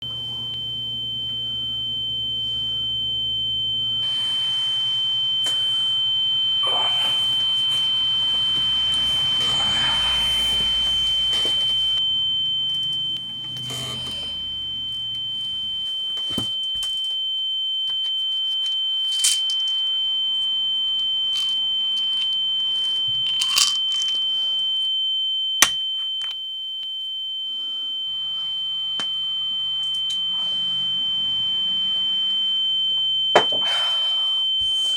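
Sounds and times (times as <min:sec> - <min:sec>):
high-pitched electronic tone: 0:01.6 - 0:16.6, 0:28.8 - 0:34.9.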